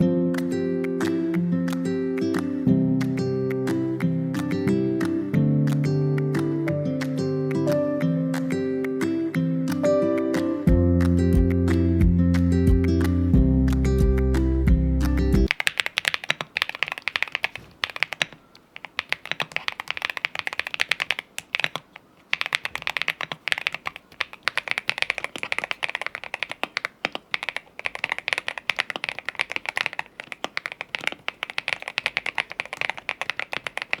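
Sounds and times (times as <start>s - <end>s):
mechanical keyboard typing: 15.5s - 34.0s.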